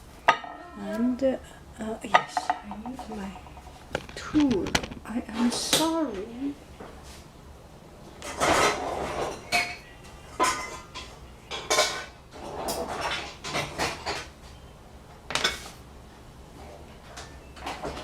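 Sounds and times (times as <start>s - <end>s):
kitchen utensils and dishes clattering: 2.0s - 5.5s, 8.2s - 14.3s, 15.3s - 15.7s.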